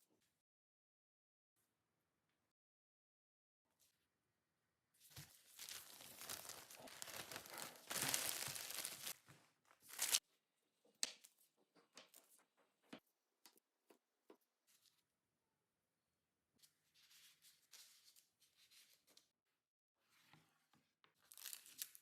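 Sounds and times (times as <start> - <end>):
crinkling rustling handling noise: 5.1 - 10.2.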